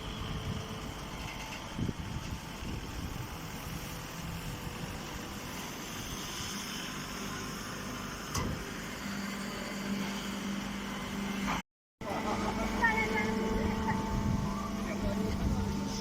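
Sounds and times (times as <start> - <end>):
baler mechanical hum: 0.0 - 16.0
low hum: 12.1 - 16.0.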